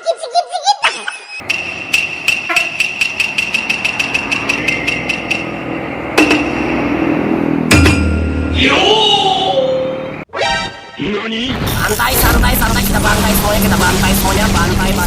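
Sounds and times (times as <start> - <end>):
sharp clicks: 1.4 - 5.4
vehicle engine running: 1.4 - 7.8
low tone: 1.4 - 10.2.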